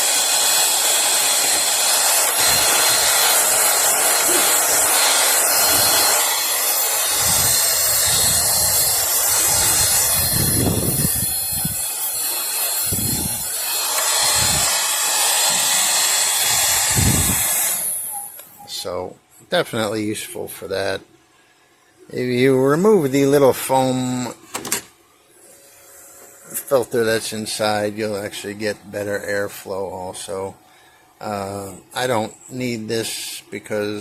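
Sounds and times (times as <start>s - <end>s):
mini vacuum cleaner whirring: 0.0s - 18.6s.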